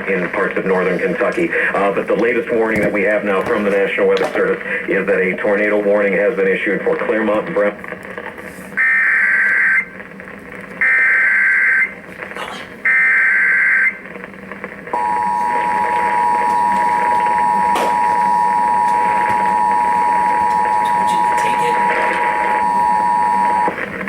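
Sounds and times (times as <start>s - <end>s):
two-tone alert signal: 15.0s - 23.7s.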